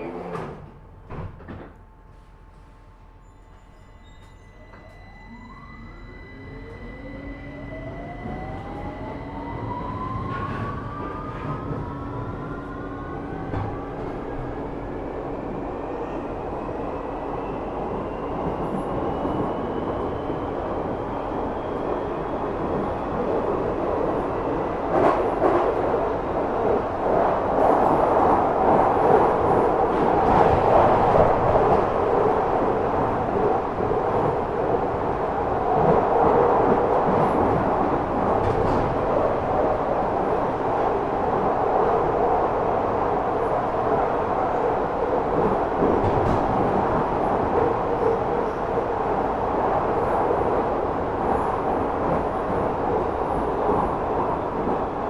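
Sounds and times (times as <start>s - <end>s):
train wheel and running noise: 16.1s - 55.0s.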